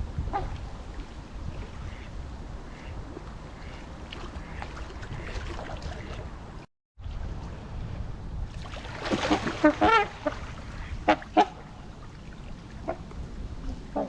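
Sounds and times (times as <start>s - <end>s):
waterfowl honking: 1.8s - 2.1s, 2.7s - 6.2s, 9.3s - 11.9s.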